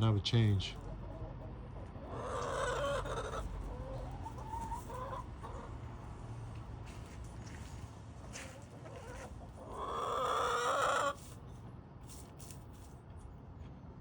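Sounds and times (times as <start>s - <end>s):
chickens clucking: 0.7s - 11.4s
chicken drawn-out call: 1.1s - 5.8s, 8.3s - 11.4s.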